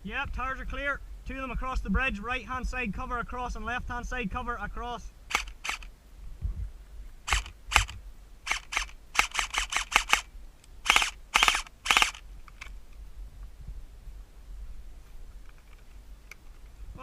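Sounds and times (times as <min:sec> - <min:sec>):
airsoft gun shots: 0:05.3 - 0:05.9, 0:07.3 - 0:12.2.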